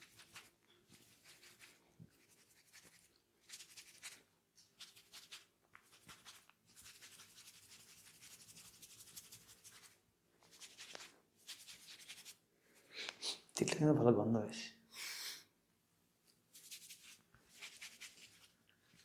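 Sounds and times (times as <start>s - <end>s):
fingers scratching through hair: 0.0s - 12.4s, 16.5s - 18.5s.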